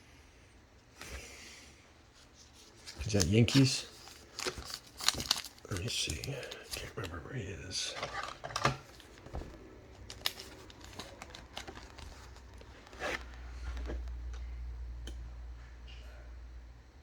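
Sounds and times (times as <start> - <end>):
cards and packaging rustling: 2.2 - 14.2.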